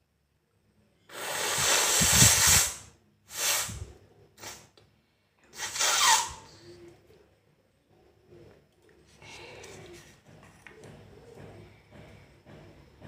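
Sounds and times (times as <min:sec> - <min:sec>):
person blowing nose: 0:01.1 - 0:04.7, 0:05.6 - 0:06.5.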